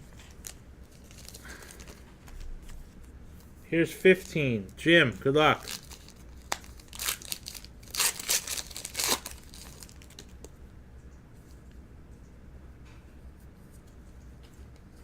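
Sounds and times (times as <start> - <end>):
wrapper handling: 0.1 - 3.5, 5.4 - 10.5
foil wrapper tearing and crinkling: 0.2 - 2.0, 5.5 - 10.4.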